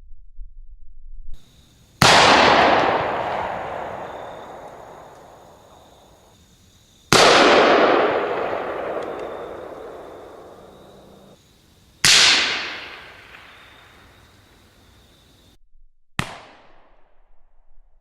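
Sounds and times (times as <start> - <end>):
rifle shots with rolling echo: 2.0 - 6.2, 7.1 - 11.4, 12.0 - 14.1.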